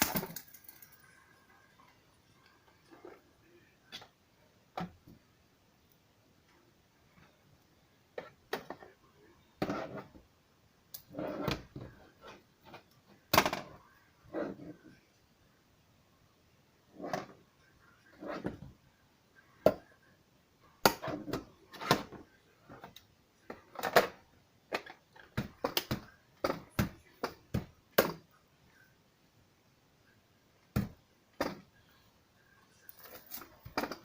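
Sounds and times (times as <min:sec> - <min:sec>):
plastic parts clicking and knocking: 0:00.0 - 0:01.0, 0:20.8 - 0:28.3, 0:33.0 - 0:34.0.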